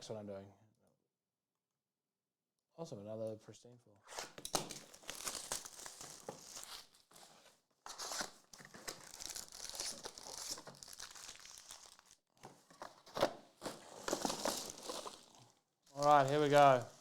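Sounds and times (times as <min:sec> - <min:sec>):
wrapper ripping: 0:04.4 - 0:07.1, 0:07.9 - 0:12.2, 0:13.6 - 0:17.0
card pack wrappers crinkling and tearing: 0:04.4 - 0:07.2, 0:07.9 - 0:12.3, 0:13.1 - 0:17.0.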